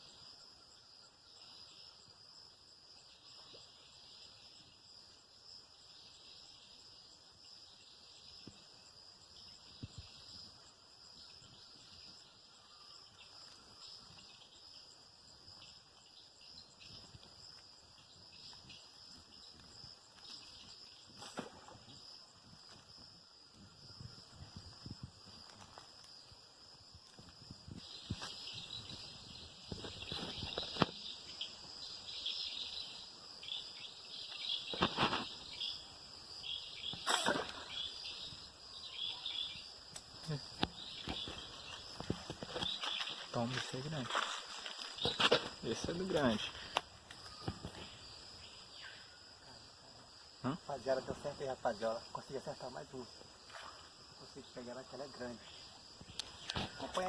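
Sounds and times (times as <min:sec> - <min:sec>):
insect chorus: 0:00.0 - 0:57.0.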